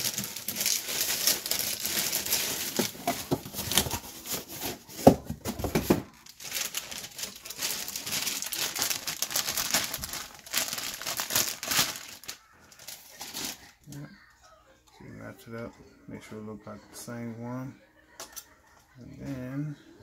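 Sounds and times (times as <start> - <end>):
plastic packaging crinkling: 0.0 - 13.9.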